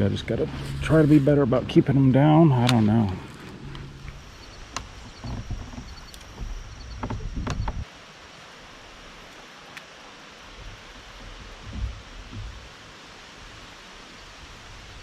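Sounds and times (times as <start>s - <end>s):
faint steady hiss: 0.0s - 15.0s
gear knocking and clicking: 3.7s - 7.8s.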